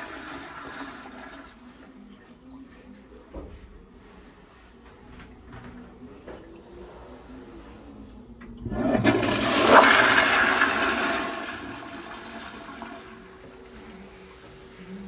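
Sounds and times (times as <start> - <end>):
toilet flushing: 0.0 - 1.9, 8.6 - 13.8.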